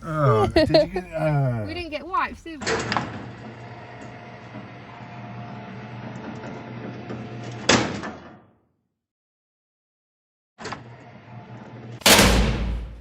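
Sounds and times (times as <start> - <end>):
car cabin hum: 0.0 - 2.6.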